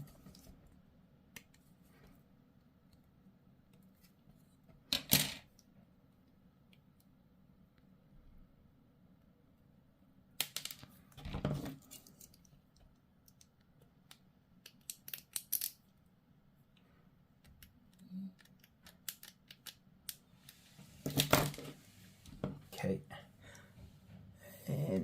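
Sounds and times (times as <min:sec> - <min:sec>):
plastic model parts clicking: 0:10.4 - 0:10.9, 0:11.9 - 0:15.8, 0:17.4 - 0:20.6.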